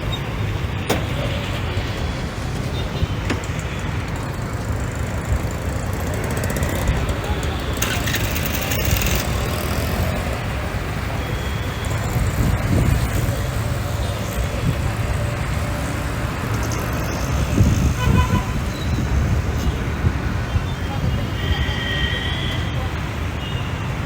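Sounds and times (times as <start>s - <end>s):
road traffic rumble: 0.0s - 24.0s
vehicle horn toots: 17.6s - 19.0s.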